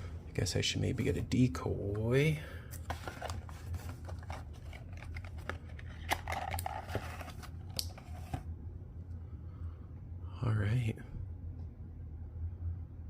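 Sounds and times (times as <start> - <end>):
packaging clicks and crinkles: 2.7 - 8.3.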